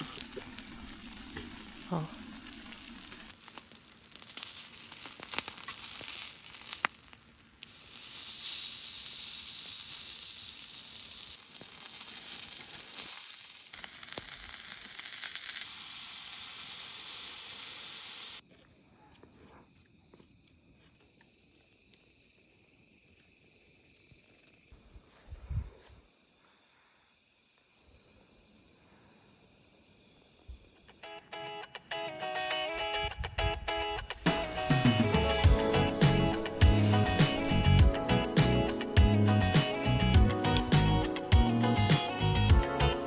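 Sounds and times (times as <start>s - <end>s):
meat sizzling on a grill: 0.0s - 18.4s, 34.2s - 42.9s
night insects chirring: 0.0s - 43.0s.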